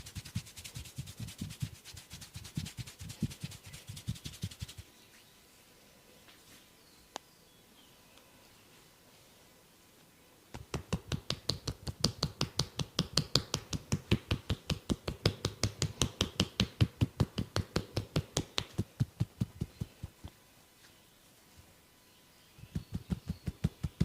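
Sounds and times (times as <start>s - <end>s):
hands tapping on body: 10.5s - 20.3s, 22.7s - 24.0s.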